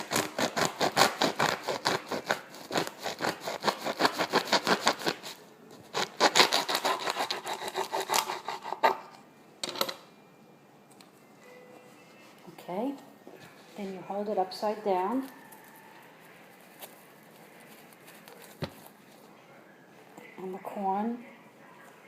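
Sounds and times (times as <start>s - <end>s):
knife sawing through corn stalk: 0.0s - 9.0s.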